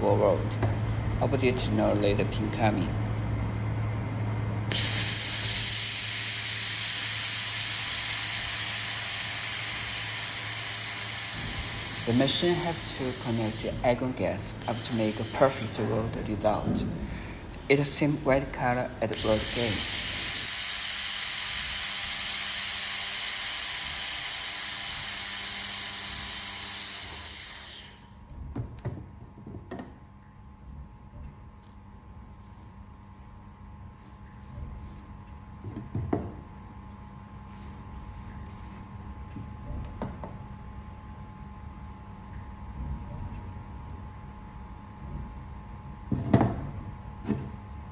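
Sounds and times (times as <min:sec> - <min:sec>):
low machine hum: 0:00.0 - 0:47.9
shielding gas hissing: 0:04.7 - 0:17.9, 0:19.0 - 0:28.2.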